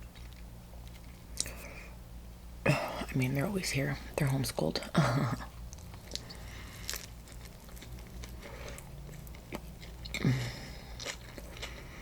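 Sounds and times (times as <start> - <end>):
person chewing: 0.0 - 1.8, 5.4 - 12.0.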